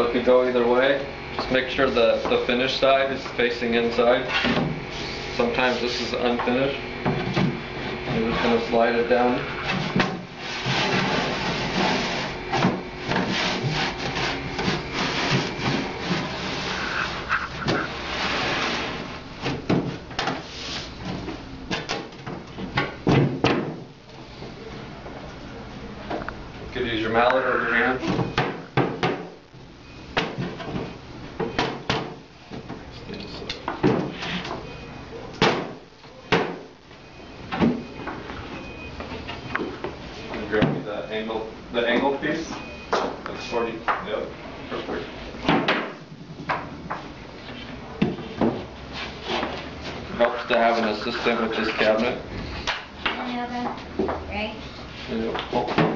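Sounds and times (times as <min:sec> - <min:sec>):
wooden panel scraping and rubbing: 0:09.4 - 0:19.1.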